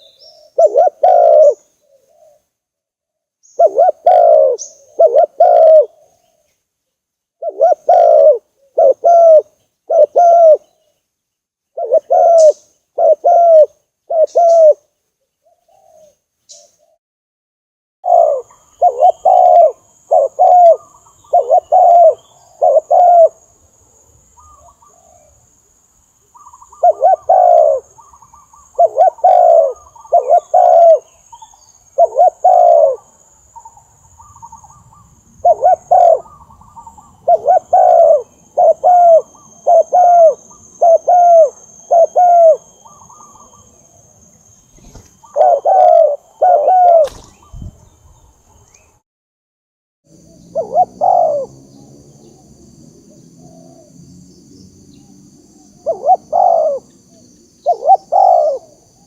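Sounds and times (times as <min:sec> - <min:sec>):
dove cooing: 0:00.0 - 0:02.5, 0:03.6 - 0:06.4, 0:07.4 - 0:10.7, 0:11.8 - 0:16.2, 0:18.0 - 0:23.4, 0:24.4 - 0:25.4, 0:26.4 - 0:43.9, 0:44.7 - 0:47.9, 0:50.2 - 0:52.5, 0:53.3 - 0:54.0, 0:55.5 - 0:59.0.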